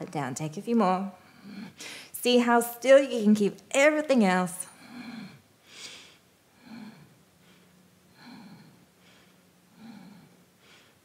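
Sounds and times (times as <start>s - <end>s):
faint steady hum: 0.0s - 11.0s
woman breathing: 1.2s - 2.2s, 4.7s - 11.0s.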